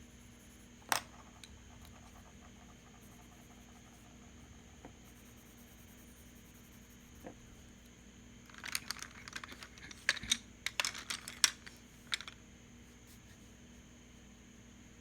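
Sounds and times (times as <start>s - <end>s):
pencils clicking and scratching: 8.5s - 12.4s.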